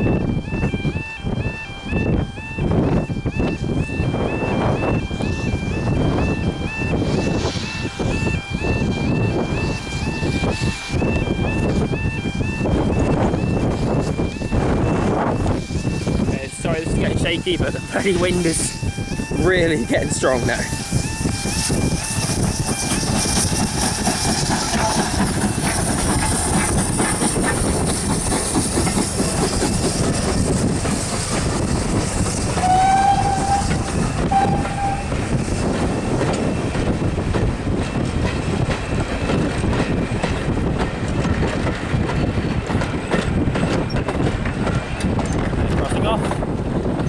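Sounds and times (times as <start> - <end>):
steam locomotive whistle blasts: 0.0 - 28.0, 29.1 - 36.2
train wheels rumbling on rails: 0.0 - 47.0
wind buffeting microphone: 0.0 - 47.0.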